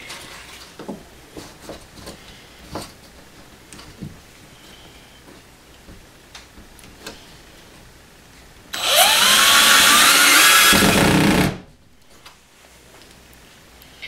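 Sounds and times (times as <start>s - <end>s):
power drill driving screw: 8.8s - 11.6s.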